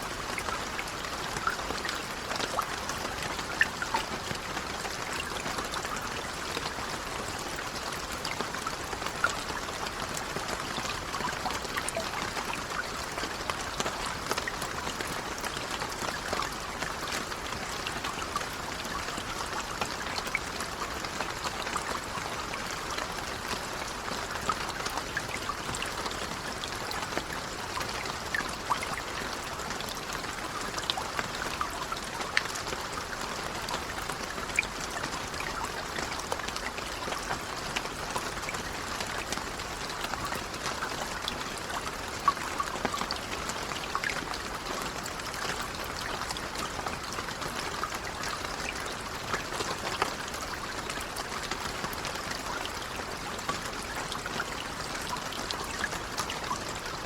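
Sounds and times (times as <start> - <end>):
gentle rain falling: 0.0 - 57.0
raindrops ticking on a surface: 0.0 - 57.0.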